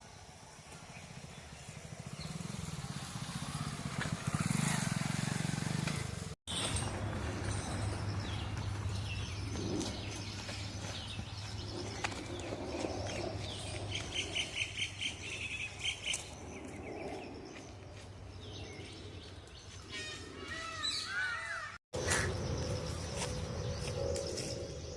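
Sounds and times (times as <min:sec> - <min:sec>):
birds chirping and calling: 0:05.7 - 0:24.9.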